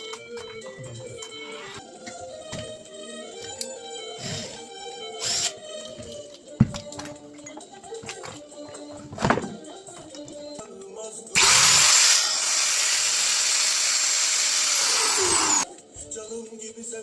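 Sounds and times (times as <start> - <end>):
angle grinder motor whining: 11.4 - 15.6.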